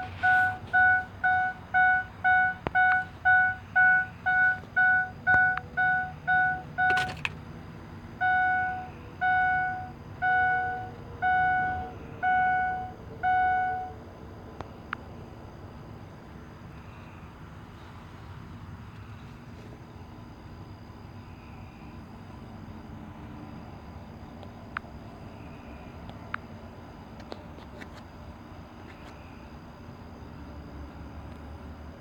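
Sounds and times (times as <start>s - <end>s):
dashboard warning chime beeping: 0.0s - 7.3s, 8.2s - 14.0s
faint steady whine: 0.0s - 32.0s.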